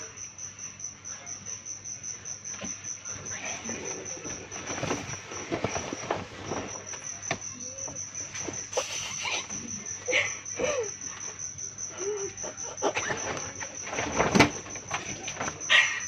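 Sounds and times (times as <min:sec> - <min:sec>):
cricket chirping: 0:00.0 - 0:16.0
clicks and rustles: 0:04.0 - 0:08.7, 0:12.8 - 0:16.0.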